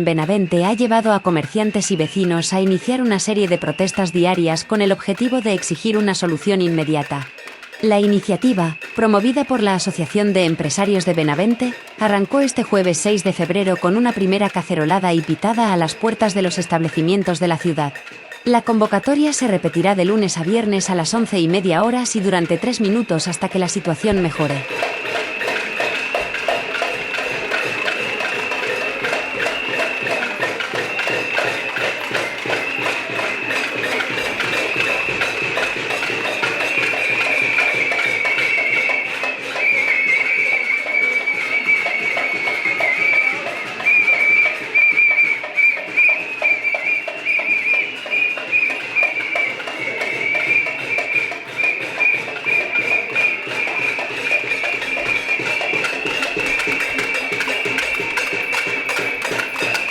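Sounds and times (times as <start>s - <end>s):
many whistles blowing: 0.0s - 59.9s
pots and pans banging: 54.2s - 59.9s.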